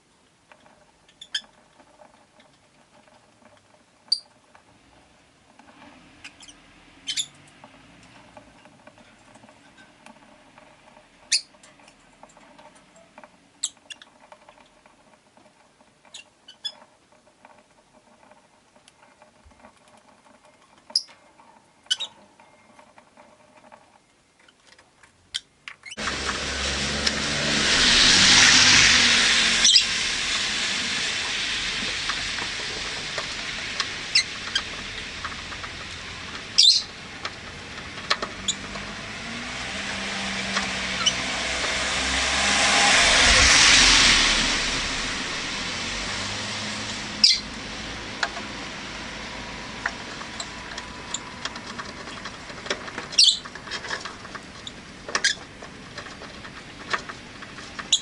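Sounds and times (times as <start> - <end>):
cars passing: 26.0 - 58.0
birds chirping high: 29.6 - 29.9, 36.5 - 37.0, 47.2 - 47.5, 53.1 - 53.5.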